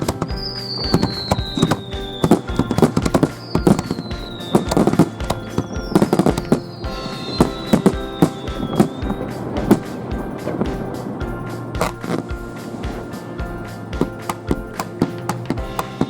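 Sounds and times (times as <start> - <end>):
firework whistle falling in pitch: 0.0 - 9.8
background music: 0.0 - 16.0
fireworks bursting and crackling: 0.0 - 16.0.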